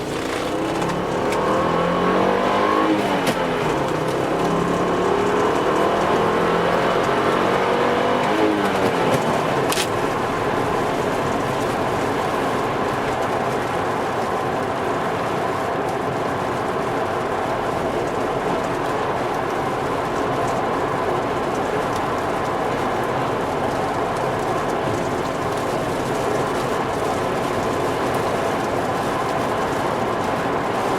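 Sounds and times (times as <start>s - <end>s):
car engine accelerating: 0.0s - 13.4s
road and tyre noise: 0.0s - 30.9s.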